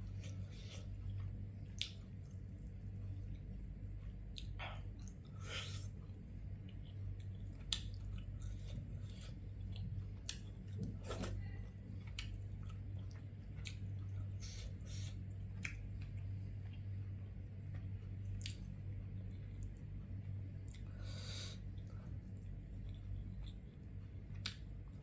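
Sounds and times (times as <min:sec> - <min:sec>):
person chewing: 0:00.0 - 0:11.4, 0:12.0 - 0:19.8, 0:20.6 - 0:25.0
low hum: 0:00.0 - 0:25.0
wet lip-smacks and mouth clicks: 0:01.7 - 0:02.0, 0:18.3 - 0:18.7, 0:24.4 - 0:24.7.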